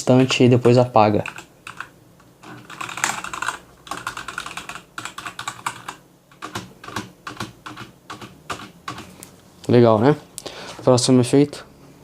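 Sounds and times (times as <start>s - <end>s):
mechanical keyboard typing: 0.7s - 9.1s.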